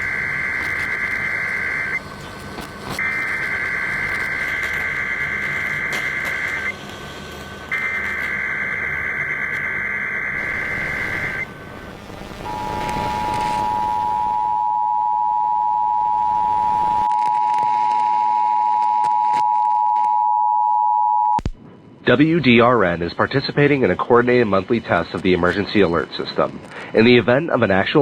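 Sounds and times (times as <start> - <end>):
two-pitch digital warble: 10.4 - 14.6
steady two-tone attention signal: 10.4 - 15.0.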